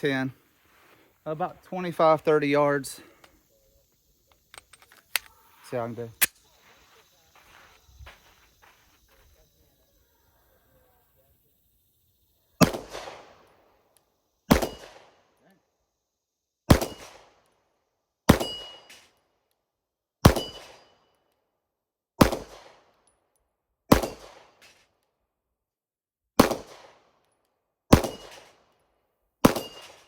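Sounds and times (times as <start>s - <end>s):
pistol shots with echo: 12.6s - 13.3s, 14.5s - 15.1s, 16.7s - 17.2s, 18.3s - 18.8s, 20.3s - 20.8s, 22.2s - 22.7s, 23.9s - 24.4s, 26.4s - 27.0s, 27.9s - 28.5s, 29.4s - 30.0s.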